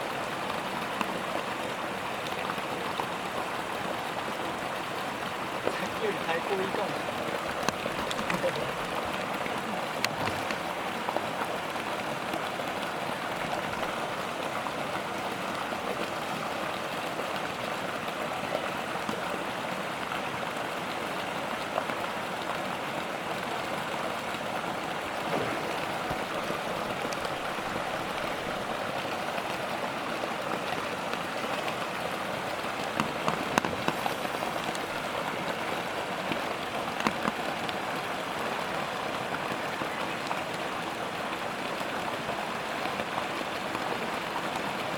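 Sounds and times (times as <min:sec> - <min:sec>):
water hissing: 0:33.1 - 0:35.2.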